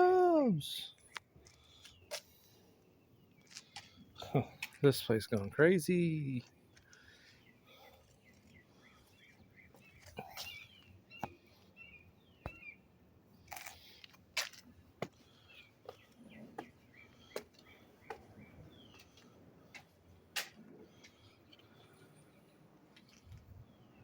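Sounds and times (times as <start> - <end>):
small birds chirping: 0.5 - 24.0.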